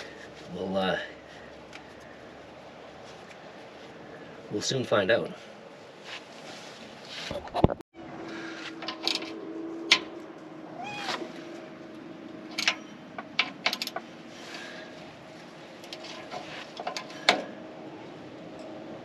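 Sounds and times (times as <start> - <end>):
steady low hum: 0.0 - 19.0
brief squeak: 10.8 - 11.3.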